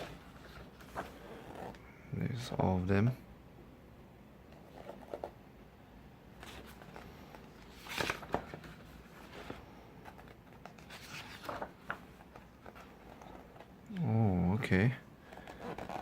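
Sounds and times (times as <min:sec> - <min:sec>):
pages turning and rustling: 0:00.0 - 0:01.8, 0:04.6 - 0:05.4, 0:06.4 - 0:13.8, 0:15.3 - 0:16.0.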